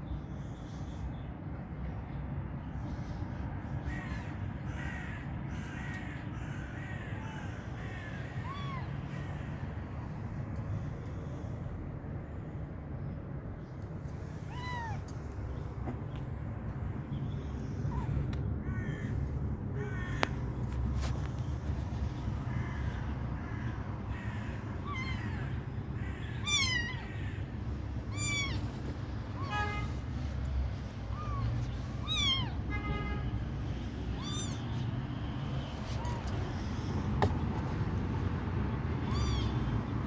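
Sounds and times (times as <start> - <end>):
kittens mewing: 7.2 - 11.3, 14.1 - 16.3, 16.9 - 20.6, 24.1 - 32.7, 33.7 - 40.0.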